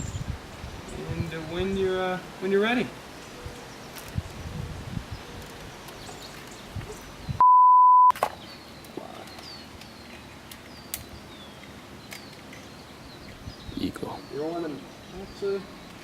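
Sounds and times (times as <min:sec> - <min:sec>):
faint outdoor background: 0:00.0 - 0:16.0
censor bleep: 0:07.4 - 0:08.1.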